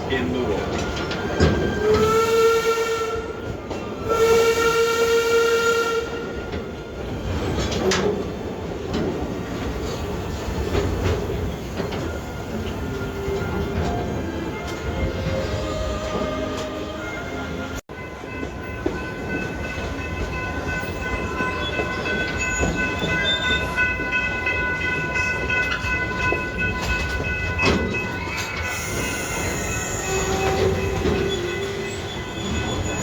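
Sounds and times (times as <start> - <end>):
train rumbling along track: 0.0 - 33.0
high-pitched wheel squeal: 28.7 - 33.0.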